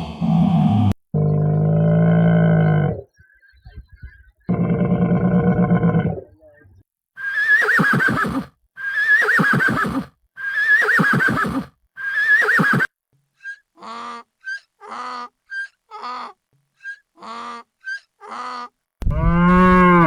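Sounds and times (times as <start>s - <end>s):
horse whinnying: 7.2s - 12.9s.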